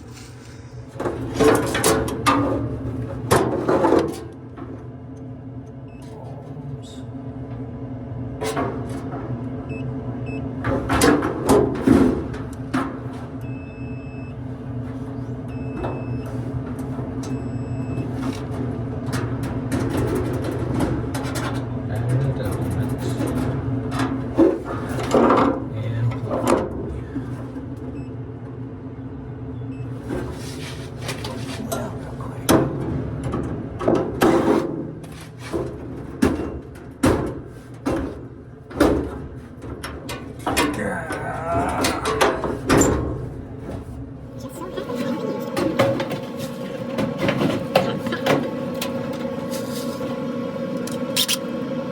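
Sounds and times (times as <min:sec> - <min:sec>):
steady electrical hum: 0:00.0 - 0:36.1
tools and metal parts clicking: 0:50.8 - 0:51.4.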